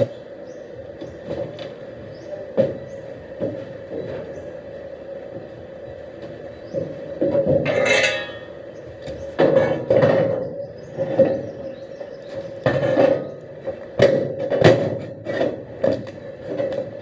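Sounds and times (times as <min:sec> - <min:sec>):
steady hum: 0:01.8 - 0:09.1
metal pieces clanking: 0:07.6 - 0:08.6.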